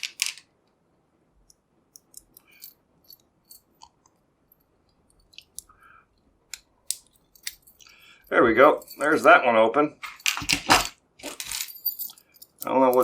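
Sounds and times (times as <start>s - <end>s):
metal tools clicking on padlock: 1.4s - 3.9s, 4.5s - 5.8s, 6.5s - 9.1s, 11.7s - 13.0s.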